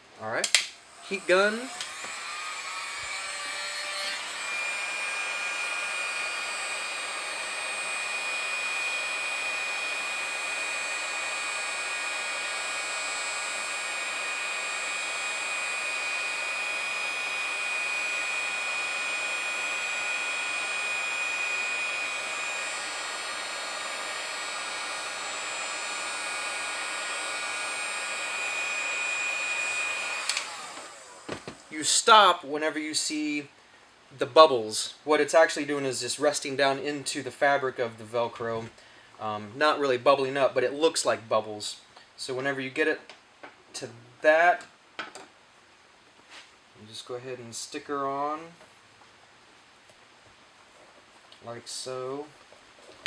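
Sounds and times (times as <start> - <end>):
heat gun blowing and whining: 0.4 - 32.5.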